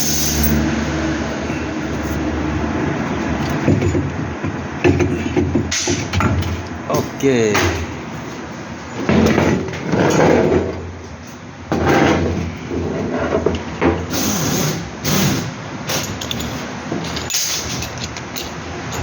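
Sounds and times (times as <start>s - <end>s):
knocks and clatter of mechanical work: 3.1s - 8.0s, 9.0s - 10.8s, 11.7s - 19.0s.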